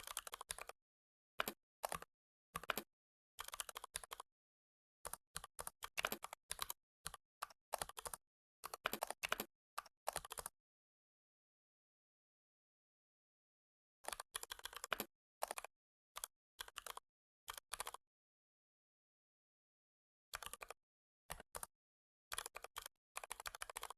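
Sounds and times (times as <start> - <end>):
computer keyboard typing: 0.0 - 0.8, 1.4 - 4.3, 5.0 - 10.5, 14.0 - 18.0, 20.3 - 21.7, 22.3 - 23.9.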